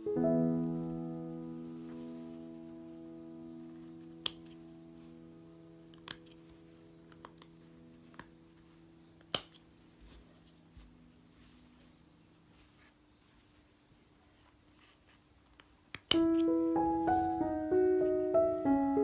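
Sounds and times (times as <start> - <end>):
piano chord: 0.0 - 6.0, 16.2 - 19.0
scissors snipping: 9.2 - 9.7.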